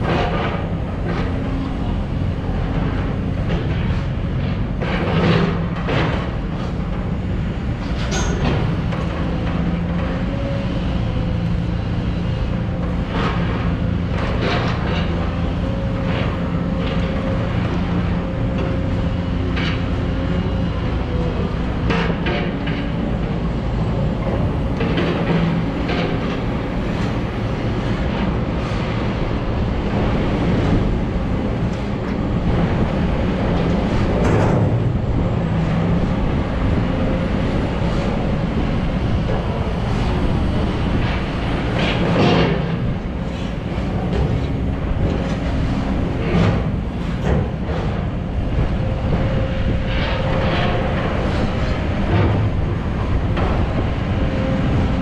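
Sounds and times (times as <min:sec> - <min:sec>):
heavy diesel machinery running: 0:00.0 - 0:55.0.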